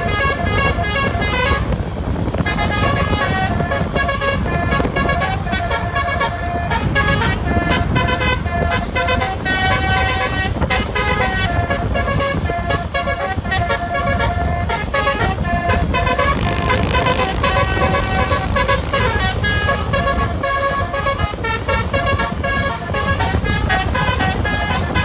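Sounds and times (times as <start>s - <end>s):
bus musical horn: 0.0s - 25.0s
engine and traffic noise: 0.0s - 25.0s.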